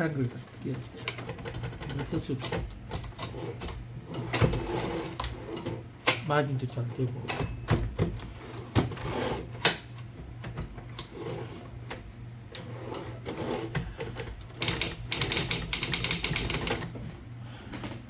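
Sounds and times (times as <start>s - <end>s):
steady low hum: 0.0s - 18.0s
typewriter key clacks: 14.5s - 16.9s.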